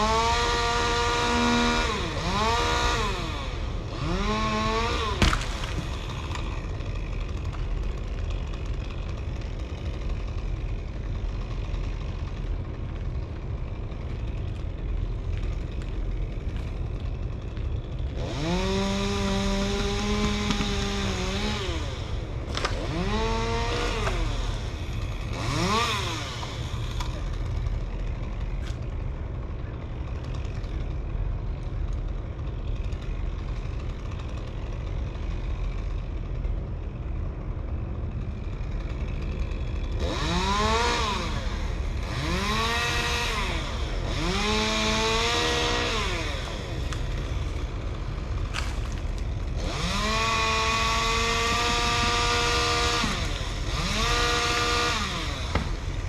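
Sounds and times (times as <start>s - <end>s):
chainsaw idling and revving: 0.0s - 56.0s.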